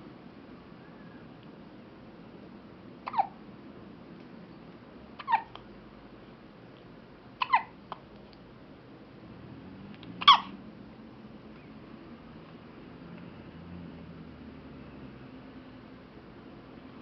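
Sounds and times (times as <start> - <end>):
person hiccuping: 3.0 - 3.4, 7.4 - 7.8, 10.2 - 10.5.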